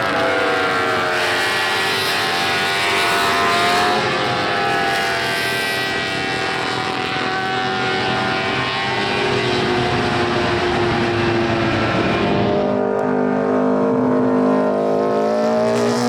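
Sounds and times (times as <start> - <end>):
lower steady engine note: 0.0 - 16.0
racing motorcycle engine at high revs: 0.0 - 16.0.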